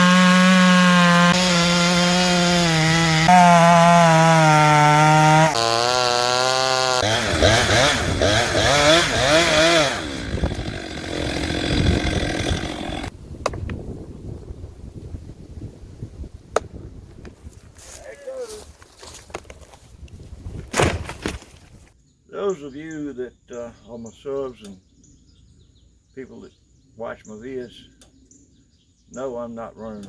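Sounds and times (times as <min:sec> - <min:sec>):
chainsaw running at high speed: 0:00.0 - 0:13.1.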